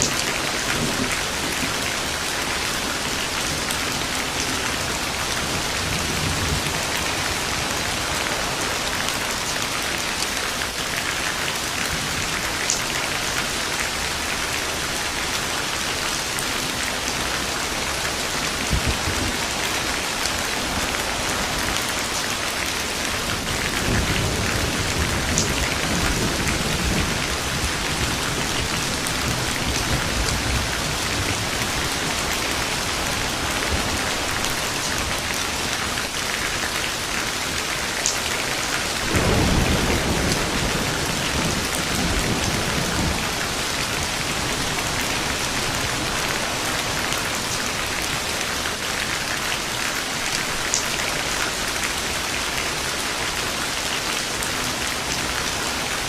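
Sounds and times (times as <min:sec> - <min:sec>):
steady rain falling: 0:00.0 - 0:56.0
thunder rumbling: 0:16.2 - 0:35.7, 0:38.4 - 0:48.3.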